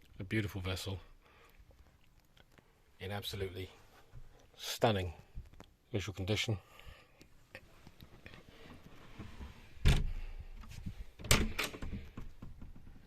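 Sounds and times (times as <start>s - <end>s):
door heavy thud: 9.8s - 10.2s.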